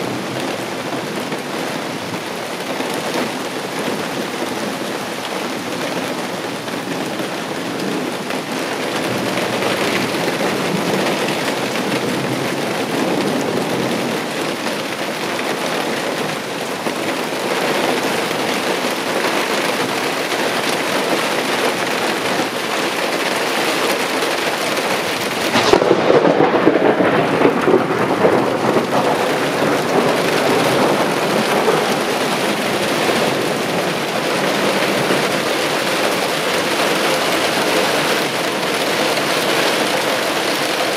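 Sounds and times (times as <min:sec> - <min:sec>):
heavy rain hissing: 0:00.0 - 0:40.9
thunder crack and rumble: 0:25.2 - 0:36.1.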